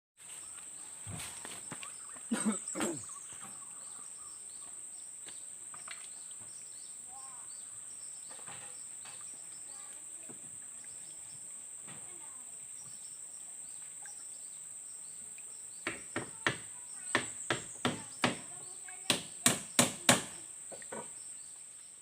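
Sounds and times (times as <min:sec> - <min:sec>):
bird chirps: 0:00.3 - 0:10.0, 0:12.1 - 0:19.1.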